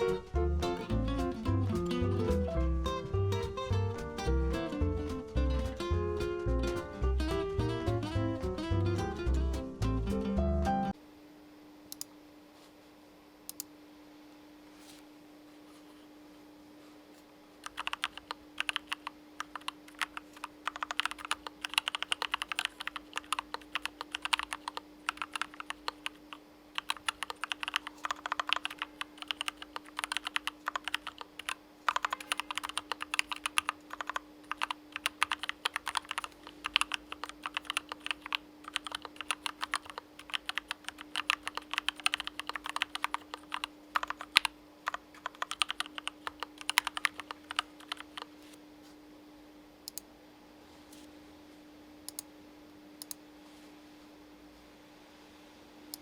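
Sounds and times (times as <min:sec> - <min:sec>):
faint steady hum: 0:00.0 - 0:56.0
mechanical keyboard typing: 0:17.6 - 0:48.3.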